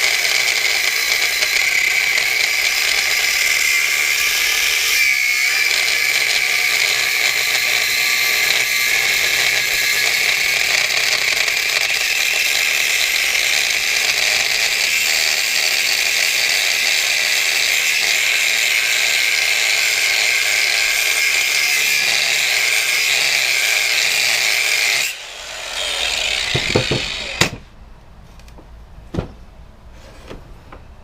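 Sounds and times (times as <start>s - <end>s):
electric power tool running: 0.0s - 27.6s
sharp knocks of parts: 26.5s - 27.7s, 28.4s - 29.4s.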